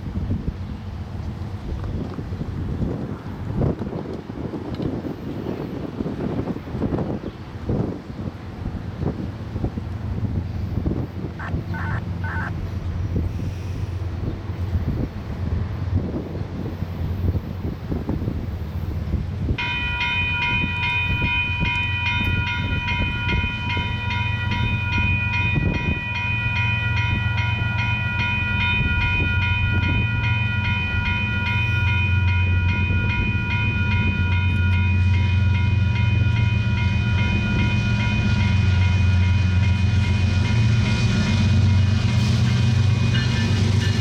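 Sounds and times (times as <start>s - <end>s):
train rumble: 0.0s - 44.0s
crossing bell ringing: 19.6s - 44.0s.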